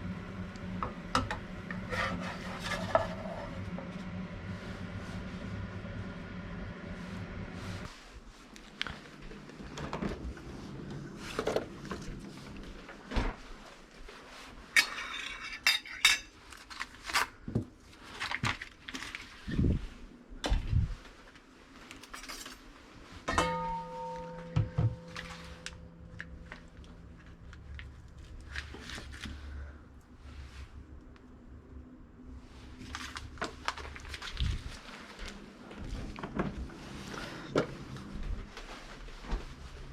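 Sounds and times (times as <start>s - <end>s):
cutlery and dishes clinking: 14.8s - 16.4s
struck pan ringing: 23.3s - 26.9s.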